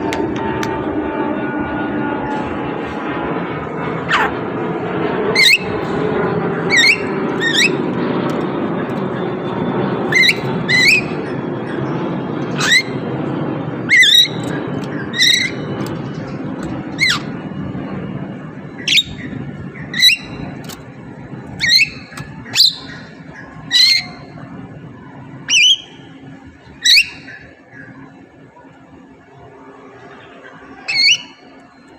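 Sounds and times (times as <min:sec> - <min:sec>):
low background hum: 0:00.0 - 0:31.9
bird squawking calls: 0:04.1 - 0:04.4, 0:05.4 - 0:05.8, 0:06.7 - 0:07.9, 0:10.1 - 0:11.8, 0:12.5 - 0:13.1, 0:13.9 - 0:15.7, 0:16.9 - 0:17.4, 0:18.8 - 0:20.4, 0:21.6 - 0:24.3, 0:30.8 - 0:31.5.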